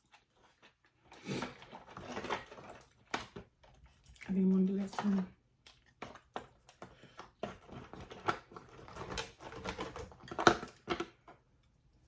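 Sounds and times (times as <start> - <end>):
wet chewing smacks and clicks: 3.6 - 4.6, 5.5 - 7.3.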